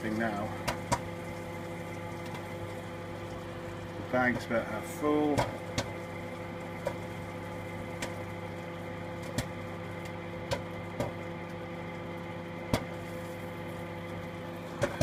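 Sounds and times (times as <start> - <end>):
popcorn popping: 0.0 - 2.9, 4.0 - 15.0
microwave oven humming: 0.0 - 15.0.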